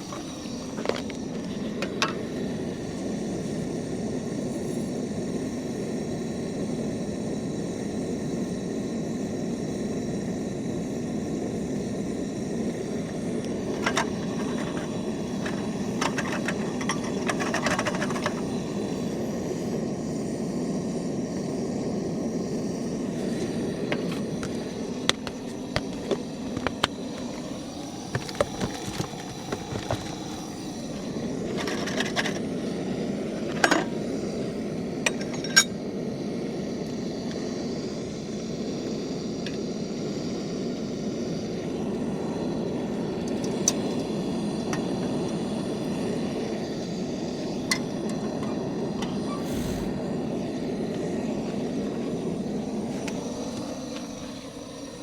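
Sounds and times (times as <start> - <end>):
cups and utensils clinking: 35.1 - 35.7.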